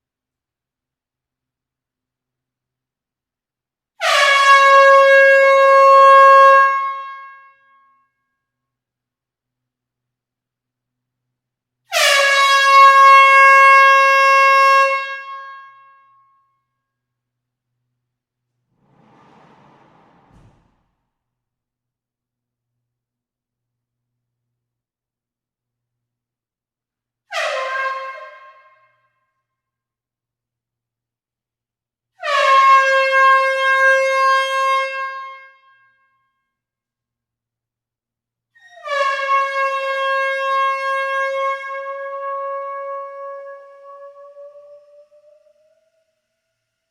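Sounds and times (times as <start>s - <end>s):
long horn blast: 18.8s - 21.0s.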